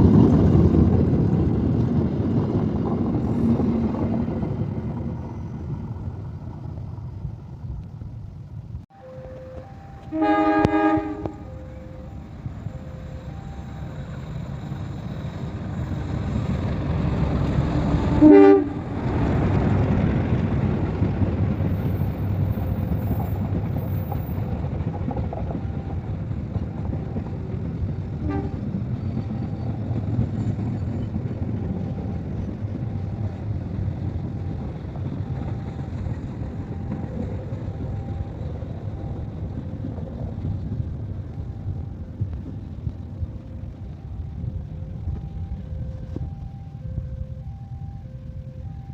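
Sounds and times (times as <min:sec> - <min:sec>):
train cars rumbling over rails: 0:00.0 - 0:48.9
train passing: 0:00.0 - 0:48.9
locomotive horn blast: 0:08.9 - 0:13.6, 0:18.0 - 0:19.0, 0:28.2 - 0:28.7.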